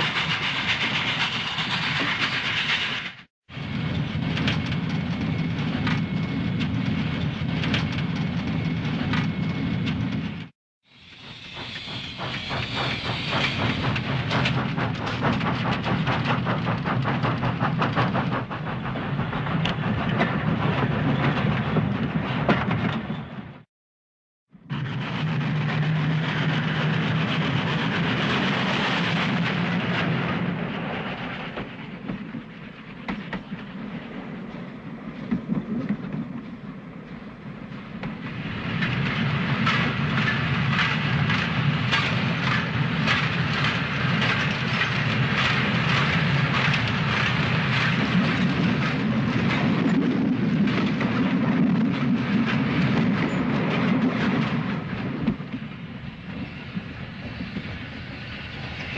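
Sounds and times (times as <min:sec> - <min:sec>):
train running on rails: 0:00.0 - 0:23.7, 0:24.5 - 0:58.9.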